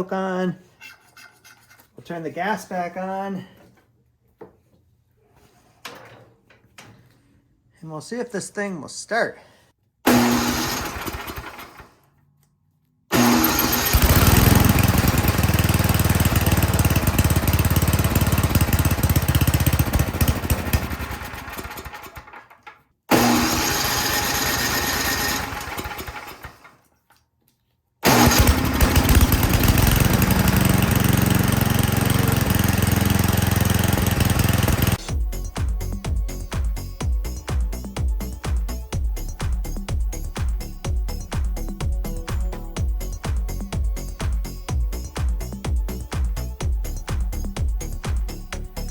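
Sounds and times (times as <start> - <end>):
small gas engine running: 10.1 - 12.1, 13.1 - 26.8, 28.0 - 35.1.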